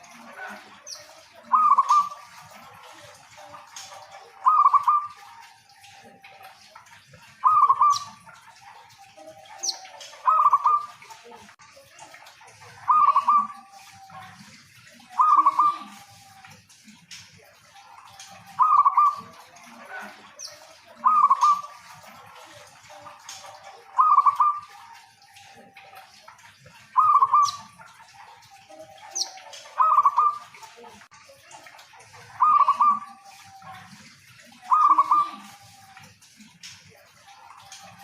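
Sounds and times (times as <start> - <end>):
dove cooing: 0.0 - 6.0, 6.9 - 11.0, 12.8 - 16.3, 17.8 - 20.3, 21.0 - 25.9, 26.9 - 30.5, 32.1 - 35.9.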